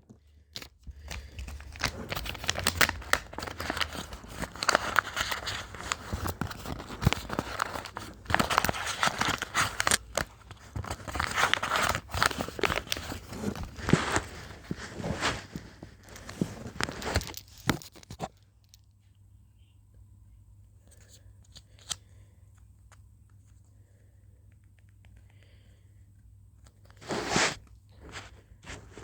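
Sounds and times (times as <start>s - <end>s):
plastic packaging crinkling and tearing: 0.6s - 18.2s.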